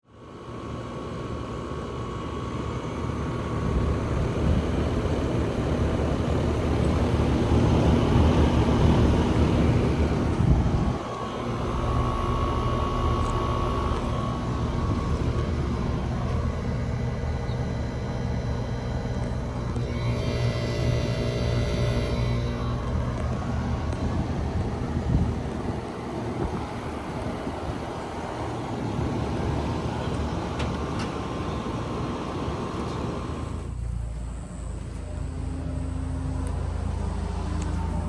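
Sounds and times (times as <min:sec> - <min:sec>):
compressor hum and whine: 0:00.0 - 0:38.0
fan whoosh: 0:03.4 - 0:17.2, 0:20.0 - 0:33.8.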